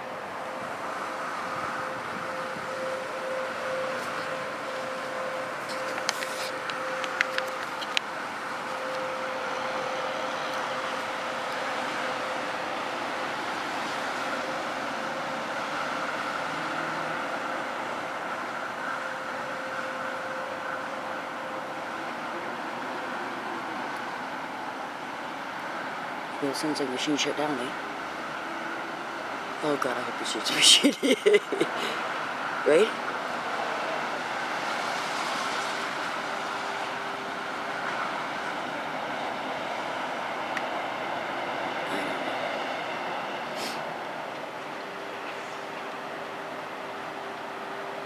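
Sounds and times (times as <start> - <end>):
droning rumble: 0.0 - 22.7.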